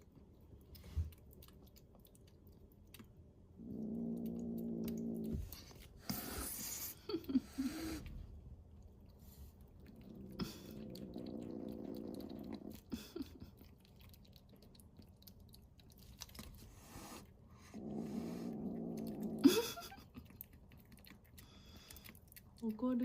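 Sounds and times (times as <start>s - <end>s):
kitten growling: 3.5s - 8.3s, 9.7s - 15.3s, 16.3s - 21.4s.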